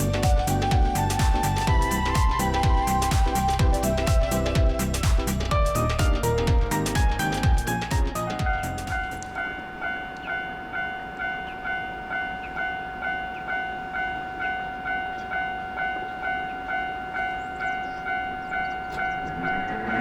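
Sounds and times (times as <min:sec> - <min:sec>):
level crossing warning bell: 0:08.4 - 0:20.0.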